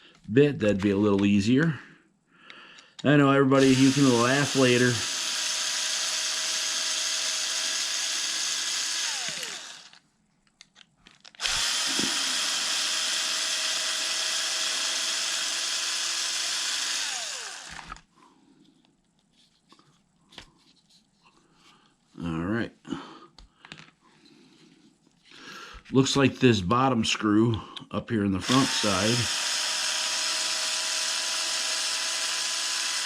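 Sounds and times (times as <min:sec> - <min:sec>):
power drill whine: 0:03.6 - 0:10.0, 0:11.4 - 0:18.1, 0:28.4 - 0:33.0.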